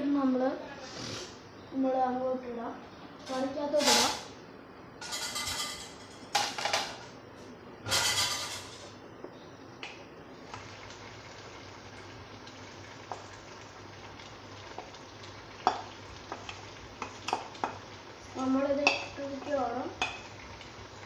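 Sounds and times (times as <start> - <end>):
gravy sizzling in a pan: 10.4 - 21.0.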